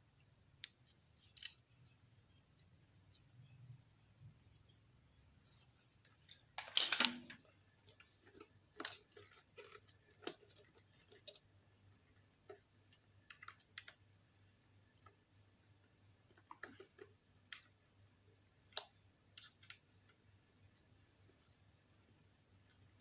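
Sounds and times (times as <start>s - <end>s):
light clicks of small parts: 0.6s - 3.2s, 12.4s - 14.1s, 16.0s - 17.8s, 18.7s - 20.2s.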